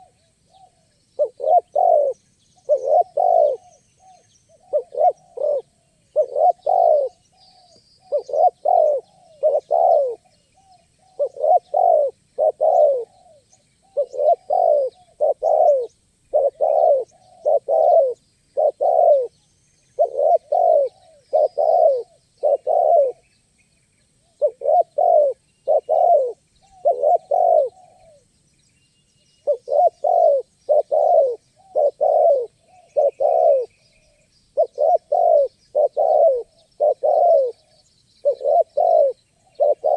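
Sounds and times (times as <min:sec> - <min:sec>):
dove cooing: 0:00.0 - 0:23.2, 0:24.4 - 0:28.2, 0:29.4 - 0:39.9
small birds chirping: 0:00.0 - 0:39.9.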